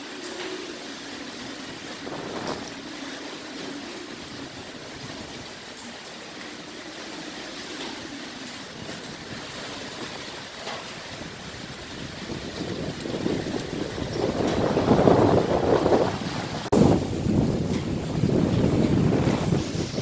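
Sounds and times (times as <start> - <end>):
strong wind rushing: 1.6 - 3.0, 11.1 - 20.0.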